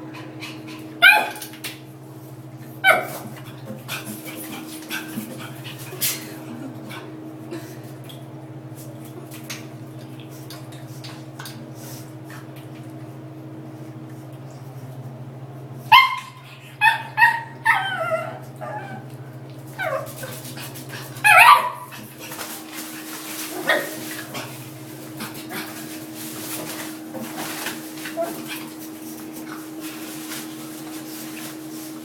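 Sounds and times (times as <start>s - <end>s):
dog yipping and whining: 1.0s - 1.4s, 15.9s - 19.0s.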